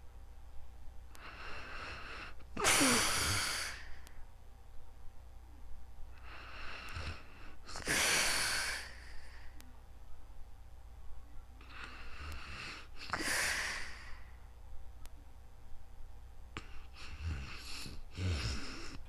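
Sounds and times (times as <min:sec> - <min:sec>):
person snoring: 0:01.2 - 0:03.9, 0:06.2 - 0:09.5, 0:11.7 - 0:14.2, 0:16.6 - 0:19.0.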